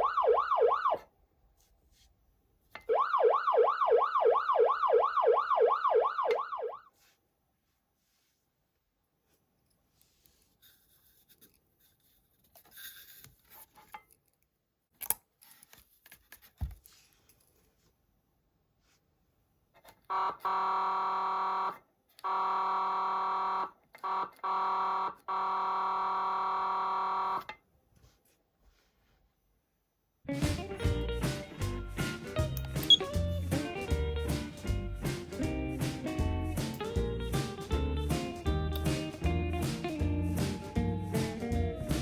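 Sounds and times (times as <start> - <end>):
siren horn blasts: 20.1 - 27.4.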